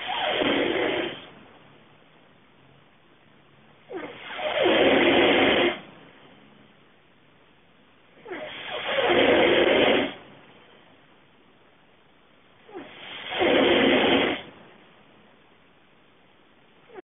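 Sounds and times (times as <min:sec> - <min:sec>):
man snoring: 0:00.1 - 0:01.3, 0:08.3 - 0:10.2, 0:12.7 - 0:14.5.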